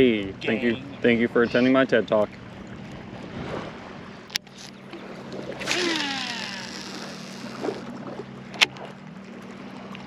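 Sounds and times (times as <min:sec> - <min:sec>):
spinning spool whirring: 0:05.5 - 0:07.9
fishing reel click: 0:05.6 - 0:07.8.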